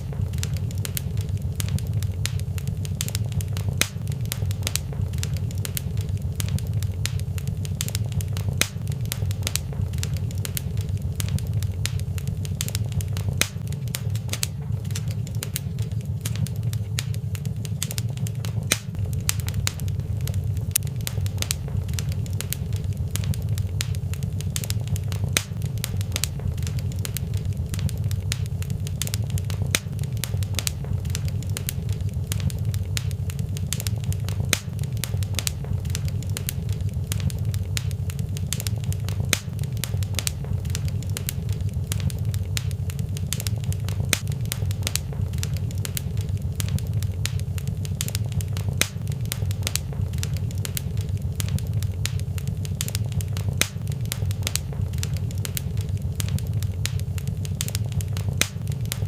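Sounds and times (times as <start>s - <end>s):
low rumble: 0.0s - 59.0s
wood fire crackling: 0.0s - 59.0s.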